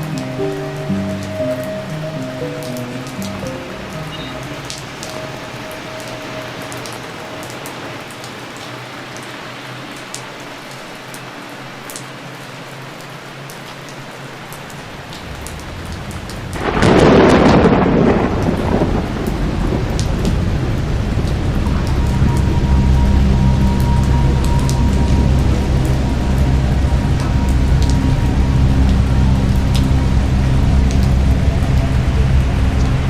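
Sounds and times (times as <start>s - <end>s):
steady rain: 0.0s - 33.0s
thunder rumble and clap: 14.8s - 33.0s.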